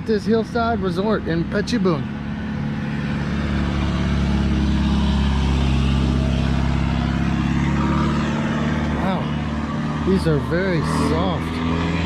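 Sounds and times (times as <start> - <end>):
vehicle engine running: 0.0 - 12.0.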